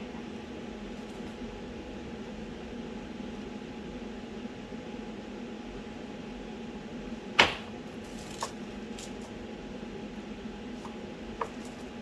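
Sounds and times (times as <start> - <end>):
steady background hum: 0.0 - 12.0
sharp knock on workbench: 7.4 - 7.8.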